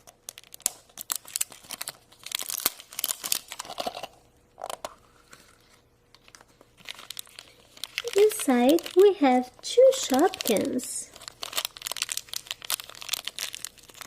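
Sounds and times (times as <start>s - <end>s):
wrapper crinkling and tearing: 0.0s - 14.0s.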